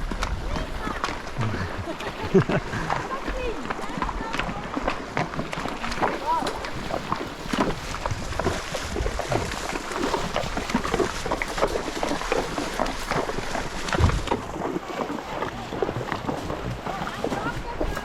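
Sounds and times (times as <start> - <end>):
water splashing and sloshing: 0.0 - 18.0
wind rumbling on microphone: 0.0 - 18.0.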